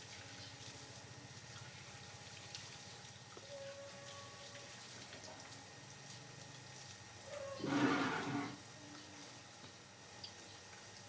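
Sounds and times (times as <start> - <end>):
tap water running: 4.4 - 8.8.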